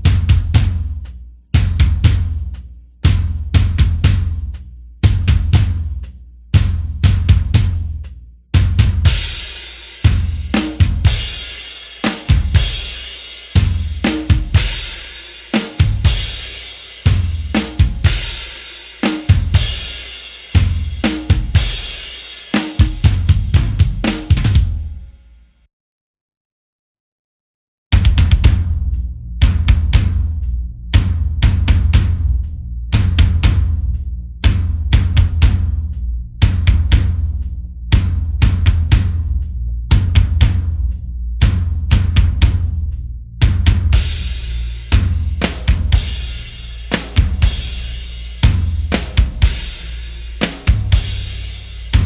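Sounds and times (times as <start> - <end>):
kick drum runs: 8.6 - 9.4, 22.8 - 24.8, 27.9 - 28.7, 47.0 - 49.8, 50.5 - 51.4
snare hits: 19.0 - 19.4, 22.6 - 23.0, 46.9 - 47.4, 50.4 - 51.0.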